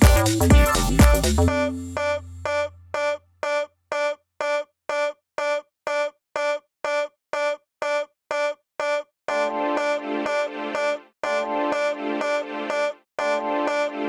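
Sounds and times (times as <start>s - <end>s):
low bass tone: 0.0s - 3.2s
repeating synth note: 0.0s - 14.0s.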